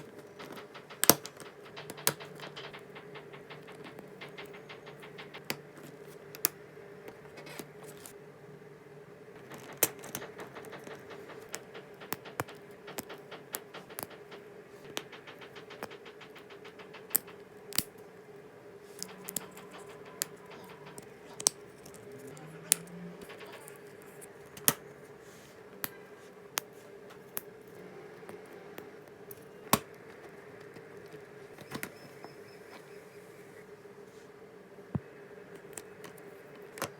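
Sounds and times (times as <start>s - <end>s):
plastic pieces clicking together: 0.0s - 6.5s, 9.5s - 18.0s, 19.0s - 24.8s
steady hum: 0.0s - 36.9s.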